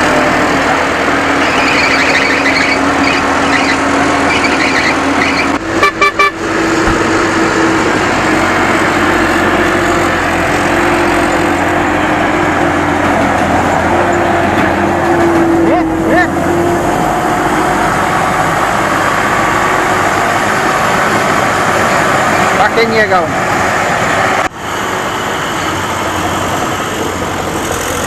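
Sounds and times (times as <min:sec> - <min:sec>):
heavy vehicle engine running: 0:00.0 - 0:28.0
vehicle horn short toots: 0:05.8 - 0:06.4.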